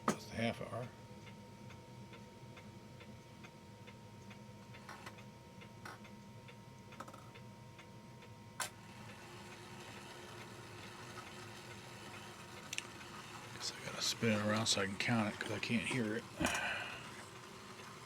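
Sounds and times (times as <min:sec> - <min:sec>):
mechanical clock ticking: 0:08.9 - 0:18.0.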